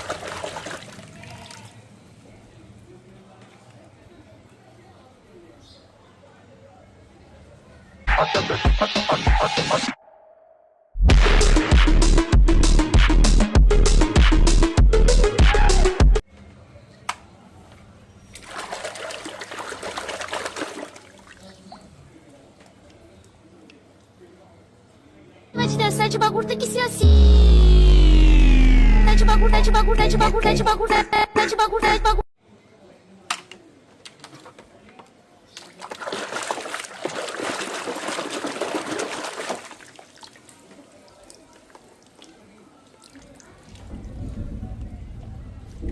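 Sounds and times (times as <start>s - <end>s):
water trickling and splashing: 0.0s - 1.9s, 18.2s - 22.2s, 35.5s - 44.4s.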